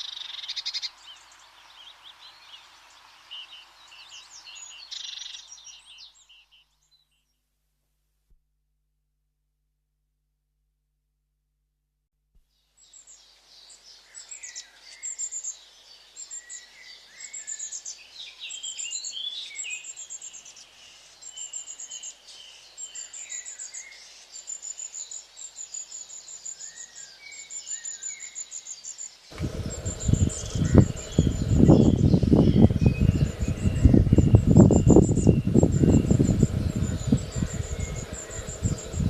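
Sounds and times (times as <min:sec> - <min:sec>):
birds chirping: 0:29.3 - 0:39.0
loud rushing noise with rumbling: 0:29.4 - 0:39.0.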